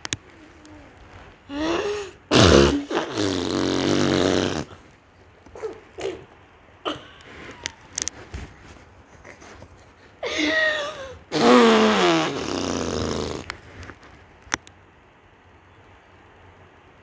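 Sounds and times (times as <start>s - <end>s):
girl vocal sounds: 0.4s - 4.8s, 10.2s - 12.9s
girl blowing a raspberry: 1.5s - 4.8s, 10.2s - 13.5s.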